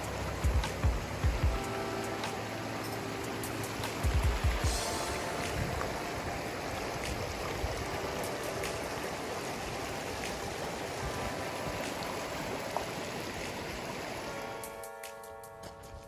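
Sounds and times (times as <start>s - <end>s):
river water rushing: 0.0s - 16.0s
low thumps: 0.3s - 2.4s, 3.4s - 6.0s.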